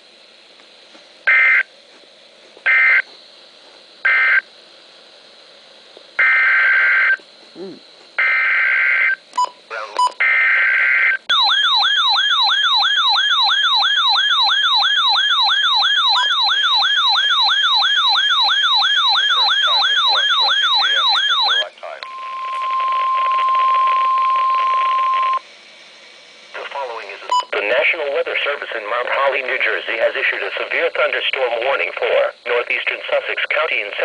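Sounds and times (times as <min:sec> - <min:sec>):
steady alarm tone: 0:01.3 - 0:01.7, 0:02.7 - 0:03.1, 0:04.0 - 0:04.5, 0:06.2 - 0:07.2, 0:08.2 - 0:09.2, 0:10.2 - 0:25.5
warbling alert siren: 0:02.7 - 0:03.0, 0:10.2 - 0:25.4
digital data tones: 0:08.2 - 0:25.4.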